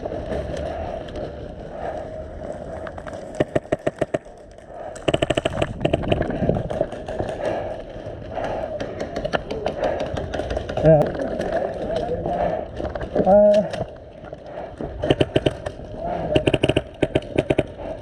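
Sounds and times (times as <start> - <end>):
steady background noise: 0.0 - 18.0
airsoft guns firing: 3.2 - 7.7, 15.0 - 18.0.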